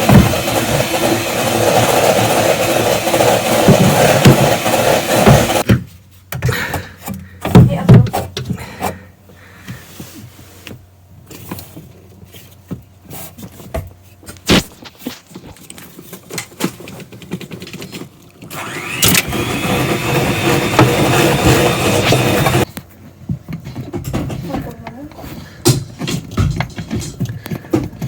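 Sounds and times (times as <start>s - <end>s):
dishwasher pump motor whining: 0.0s - 5.7s, 18.5s - 22.7s.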